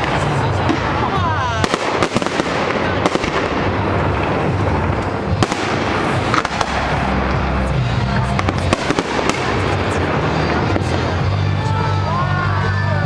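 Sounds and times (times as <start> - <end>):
sharp fireworks cracks: 0.0 - 12.6
fireworks crackling: 0.0 - 13.0
music with low bass line: 3.0 - 13.0.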